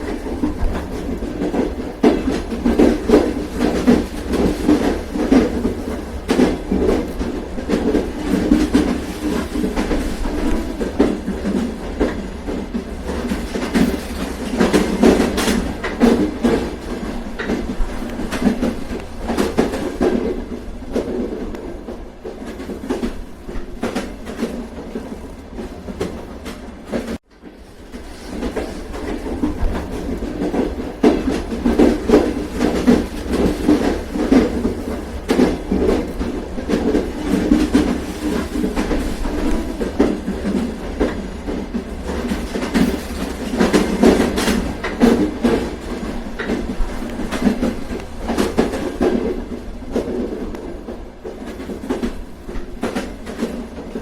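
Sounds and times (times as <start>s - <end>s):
train rumbling on rails: 0.0s - 54.0s
wheels clicking over rail joints: 0.0s - 54.0s.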